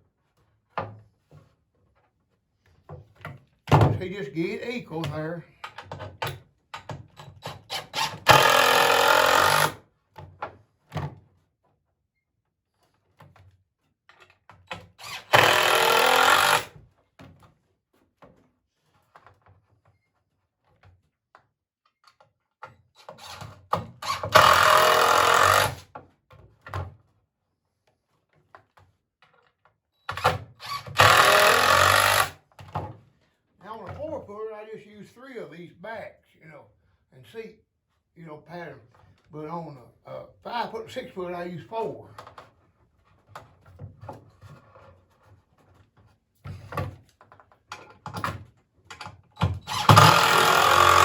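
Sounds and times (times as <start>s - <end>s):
power drill driving screws: 7.5s - 9.8s, 15.0s - 16.8s, 23.2s - 25.9s, 30.1s - 32.4s, 49.4s - 51.0s.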